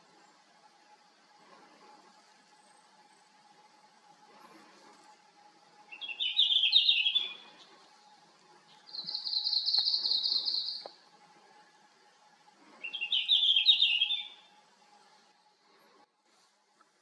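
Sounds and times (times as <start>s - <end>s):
faint hum: 0.0s - 17.0s
bird singing trills: 5.9s - 7.7s, 8.7s - 10.9s, 12.8s - 14.6s.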